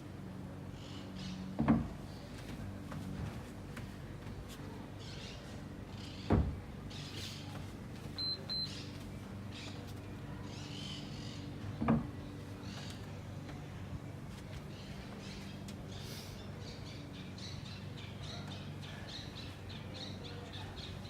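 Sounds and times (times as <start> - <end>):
short high beeps: 8.2 - 8.7.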